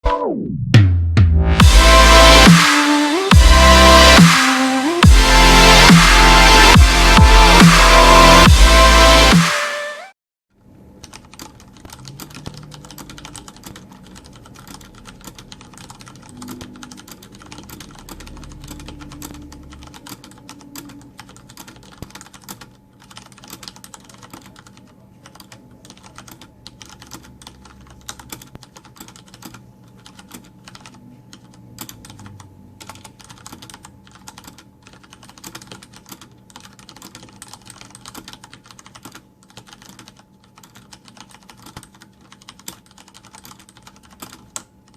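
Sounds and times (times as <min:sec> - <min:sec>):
mechanical keyboard typing: 0:11.0 - 0:44.9.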